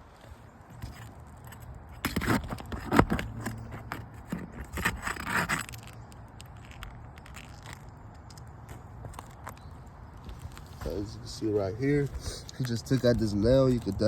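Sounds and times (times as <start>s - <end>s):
nail scraping out of shingle: 0.8s - 9.8s.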